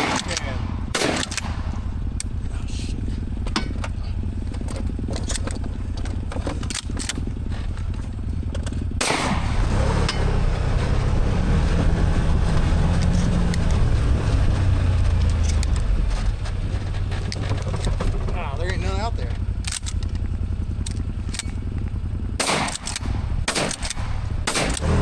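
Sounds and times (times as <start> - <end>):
vehicle engine running and revving: 0.0 - 25.0
vehicle rattles and knocks: 0.0 - 25.0
sharp bang: 9.0 - 10.4, 22.4 - 24.9.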